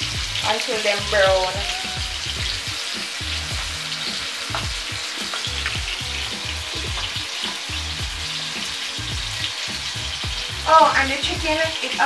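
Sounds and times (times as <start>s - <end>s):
chicken frying in hot oil: 0.0s - 12.0s.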